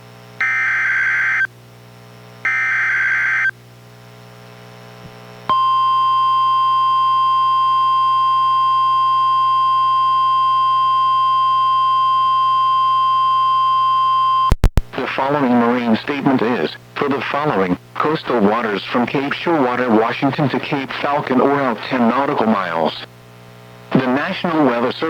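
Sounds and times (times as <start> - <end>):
steady warning alarm tone: 0.4 - 1.5, 2.4 - 3.5, 5.5 - 14.5.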